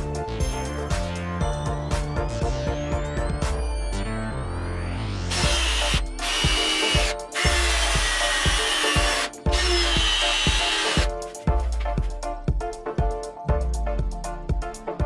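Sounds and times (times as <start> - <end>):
background music with steady beat: 0.0 - 15.0
power tool running: 5.3 - 11.1.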